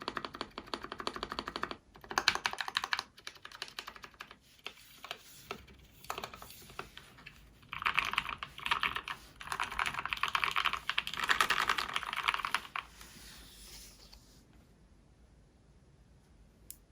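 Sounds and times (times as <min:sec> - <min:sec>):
mechanical keyboard typing: 0:00.0 - 0:12.9.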